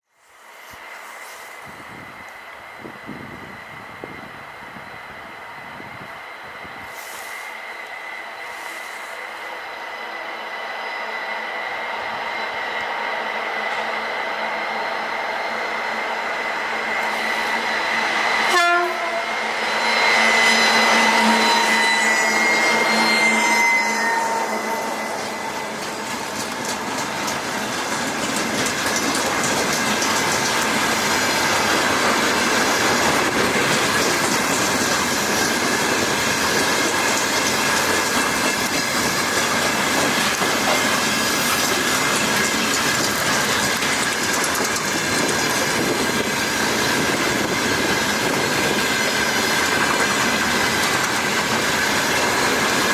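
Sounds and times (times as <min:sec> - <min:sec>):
diesel locomotive passing: 0:00.2 - 0:52.9
train wheel noise: 0:00.2 - 0:52.9
turbocharger whistle: 0:18.5 - 0:25.6.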